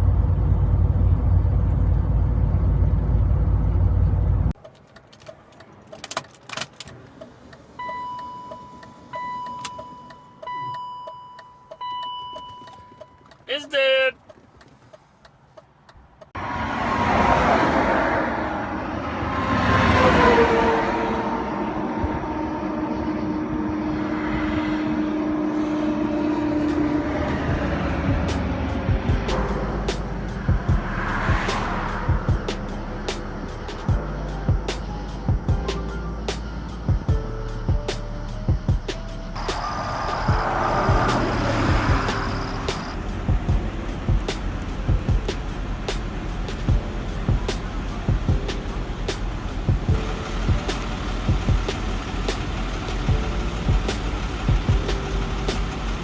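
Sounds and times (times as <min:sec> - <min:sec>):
road noise inside car cabin: 0:00.0 - 0:56.0
steady drone: 0:20.1 - 0:45.3
car engine with knocking rod: 0:25.6 - 0:56.0.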